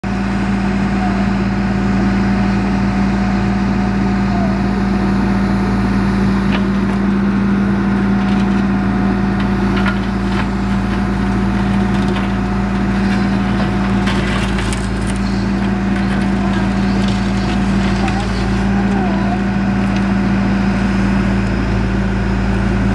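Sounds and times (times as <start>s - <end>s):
diesel engine humming: 0.0s - 22.9s
bucket digging cracks and knocks: 7.9s - 19.1s.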